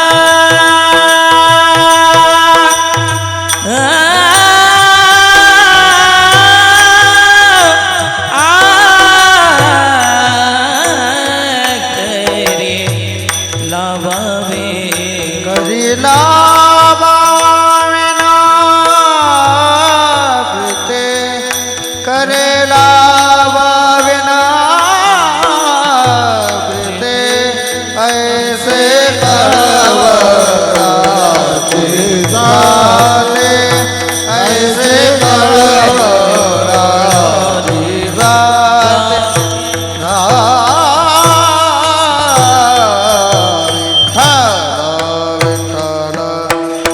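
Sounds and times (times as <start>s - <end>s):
hand cymbal strikes: 0.0s - 46.9s
man singing devotional melody: 0.0s - 46.9s
held accompaniment tones: 19.3s - 46.9s
drum strokes: 25.4s - 46.9s.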